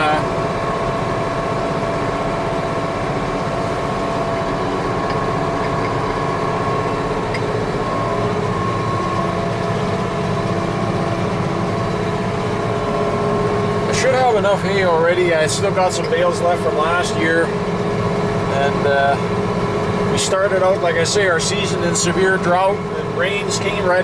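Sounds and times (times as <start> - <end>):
baler mechanical hum and whine: 0.0 - 24.0
tractor diesel engine under load: 0.0 - 24.0.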